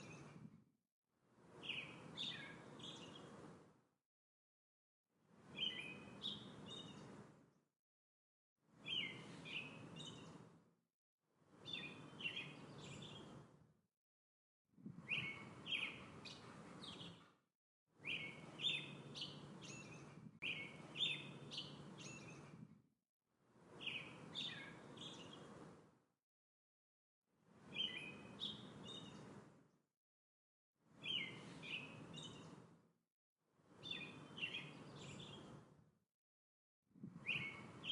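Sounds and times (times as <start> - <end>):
songbird chirping: 1.5 - 3.5, 5.4 - 7.3, 8.8 - 10.5, 11.6 - 13.5, 15.0 - 17.3, 18.0 - 22.6, 23.7 - 25.7, 27.6 - 29.4, 31.0 - 32.6, 33.8 - 35.6, 37.2 - 37.9.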